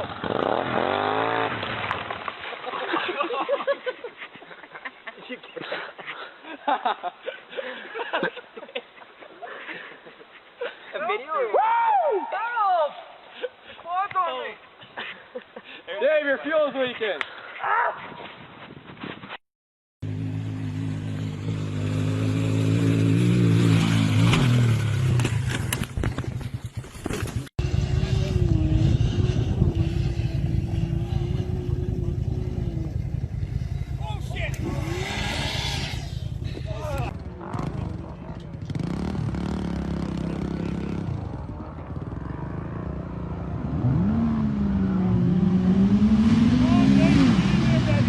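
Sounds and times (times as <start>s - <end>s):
off-road vehicle engine running: 20.0s - 48.0s.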